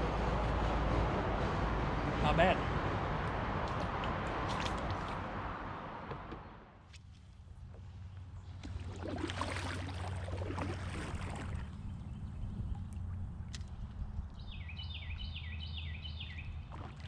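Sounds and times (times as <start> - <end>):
water splashing around kayak: 3.6 - 5.5, 6.8 - 14.3, 16.6 - 17.0.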